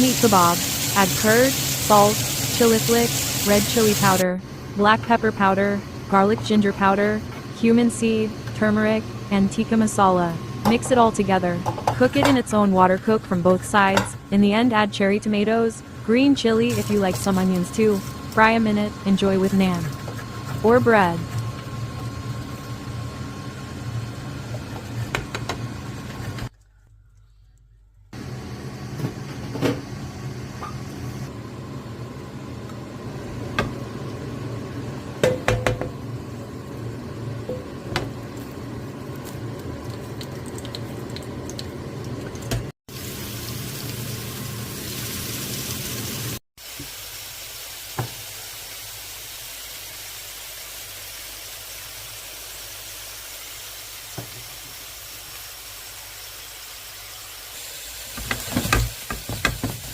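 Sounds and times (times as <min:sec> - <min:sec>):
meat sizzling in a pan: 0:00.0 - 0:04.2, 0:42.9 - 0:59.9.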